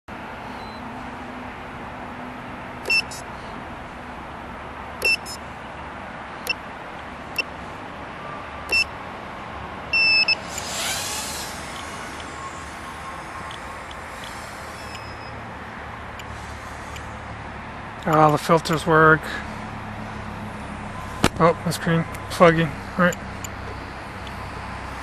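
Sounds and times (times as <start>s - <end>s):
drone buzzer beeping: 2.8s - 3.2s, 5.0s - 5.4s, 9.9s - 15.5s
short rising whir: 10.0s - 15.4s.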